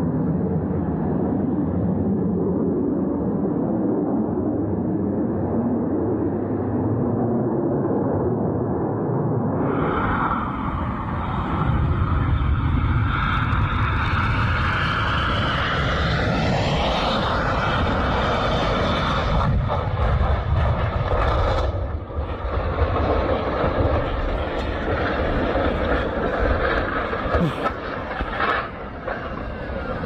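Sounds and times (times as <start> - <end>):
aircraft engine noise: 9.5 - 30.0.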